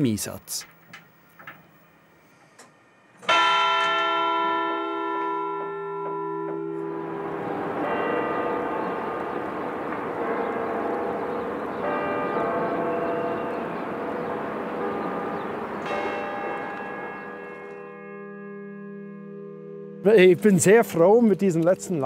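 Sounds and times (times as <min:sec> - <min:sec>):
large church bell strike: 0:03.2 - 0:20.1
church bells ringing together: 0:03.2 - 0:22.0.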